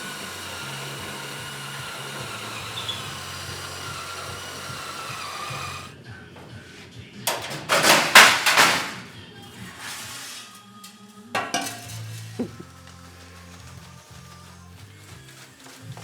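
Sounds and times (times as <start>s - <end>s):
loud rough noisy bursts: 0.0s - 5.9s
power tool motor whining: 0.0s - 6.0s.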